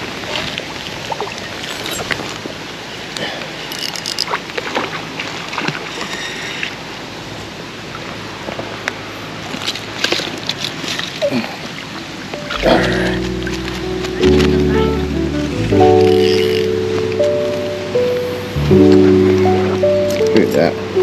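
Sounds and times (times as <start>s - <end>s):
stream water flowing: 0.0s - 21.0s
small splashes and clicks: 8.5s - 11.2s.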